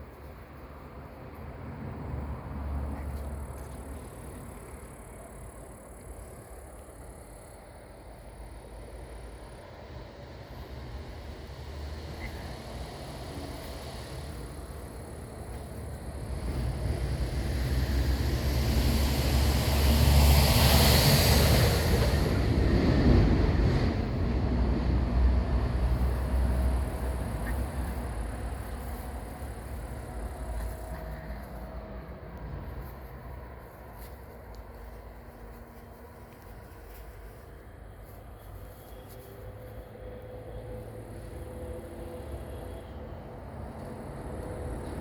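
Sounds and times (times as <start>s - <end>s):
vehicle passing by: 10.4s - 37.0s.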